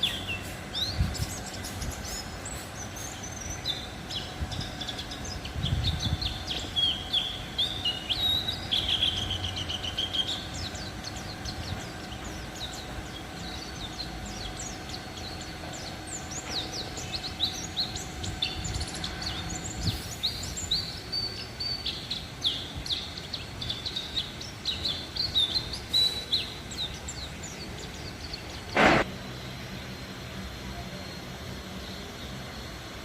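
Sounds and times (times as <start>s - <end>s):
birds twittering: 0.0s - 33.0s
loud thump or rustle: 28.8s - 29.1s.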